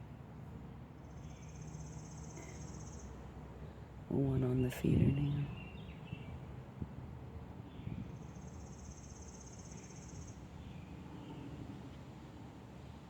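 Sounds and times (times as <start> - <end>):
low outdoor rumble: 2.3 - 7.8.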